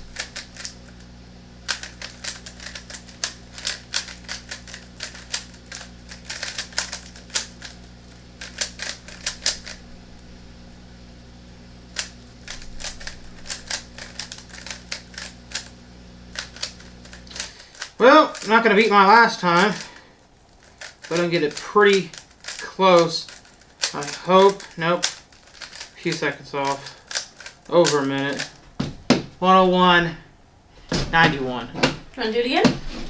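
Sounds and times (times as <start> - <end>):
puzzle cube plastic clicks: 0.1 - 1.0, 1.7 - 9.8, 12.0 - 28.6.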